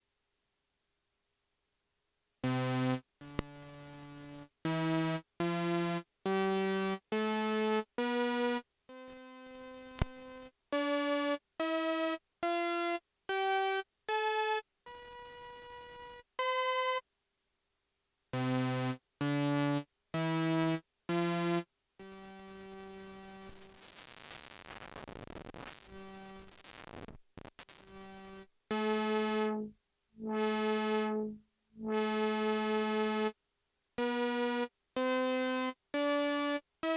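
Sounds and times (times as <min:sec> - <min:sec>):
click: 0:10.0 - 0:10.2
synthesizer single notes: 0:27.8 - 0:33.3.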